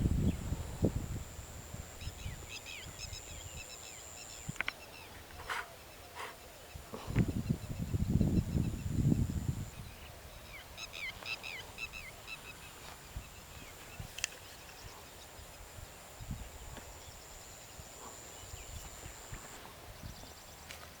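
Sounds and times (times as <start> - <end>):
high-pitched insect drone: 0.0 - 4.8, 7.3 - 10.1, 14.5 - 19.6
bird chirping: 1.9 - 15.6.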